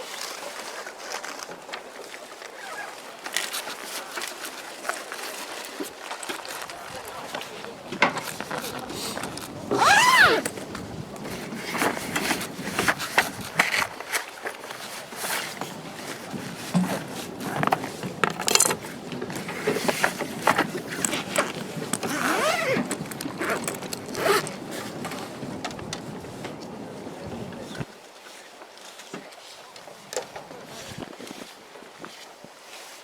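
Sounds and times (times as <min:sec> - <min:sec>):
zipper-like scraping rasps: 0:08.4 - 0:25.3.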